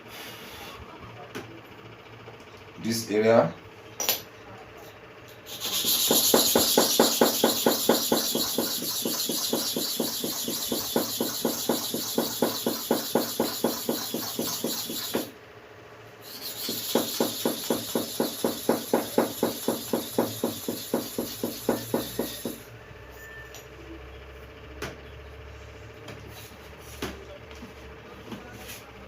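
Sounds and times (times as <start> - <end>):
blade rubbing on sharpening stone: 5.5 - 15.3, 16.2 - 22.6.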